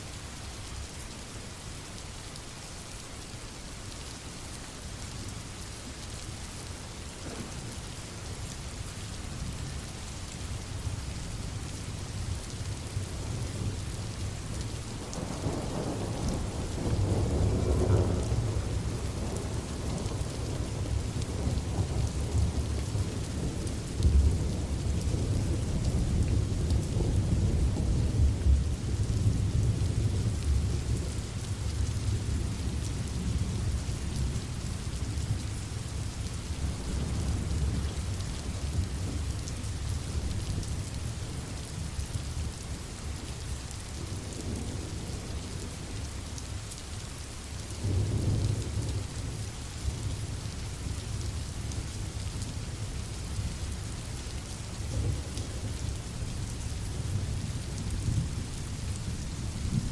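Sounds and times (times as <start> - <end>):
steady rain: 0.0 - 59.9
low rolling thunder: 14.9 - 35.2, 47.8 - 50.3.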